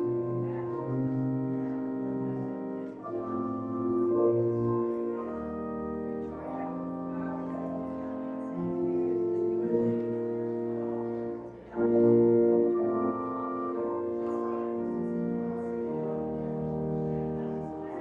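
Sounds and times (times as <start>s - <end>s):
organ chords: 0.0s - 18.0s.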